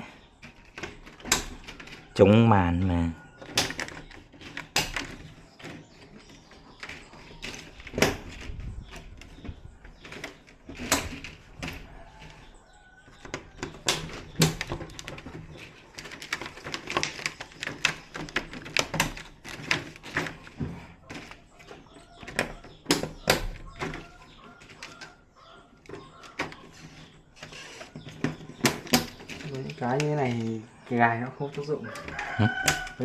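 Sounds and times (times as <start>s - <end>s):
clicks and knocks of parts handled: 0.4s - 2.2s, 3.4s - 12.4s, 13.2s - 25.1s, 27.4s - 30.5s, 31.5s - 33.0s.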